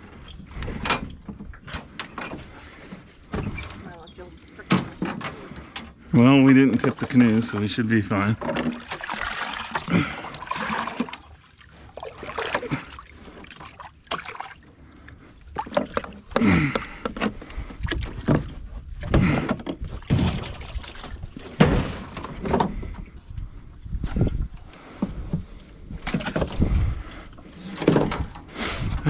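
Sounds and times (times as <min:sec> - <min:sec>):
paddle strokes and splashes: 0:01.4 - 0:05.7, 0:06.8 - 0:22.5.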